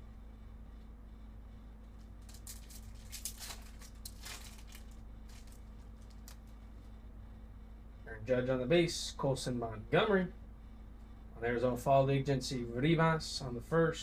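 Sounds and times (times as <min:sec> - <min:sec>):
low electrical hum: 0:00.0 - 0:14.0
trading cards rustling and clicking: 0:02.0 - 0:06.6.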